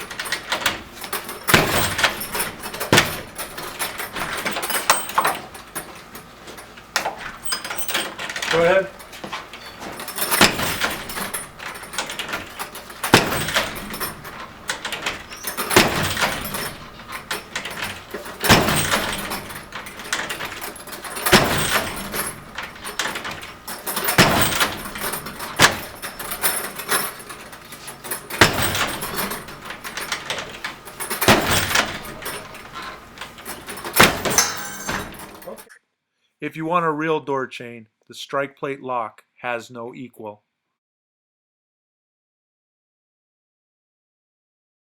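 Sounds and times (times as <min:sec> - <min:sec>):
heavy bag striking door: 0:00.0 - 0:05.9, 0:06.6 - 0:35.7.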